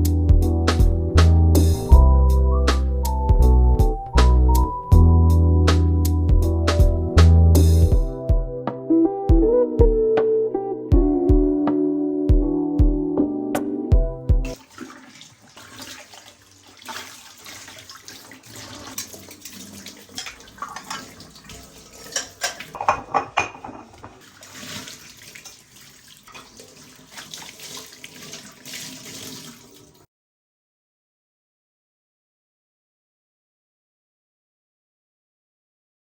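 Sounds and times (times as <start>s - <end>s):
tap water running into sink: 14.5s - 30.1s.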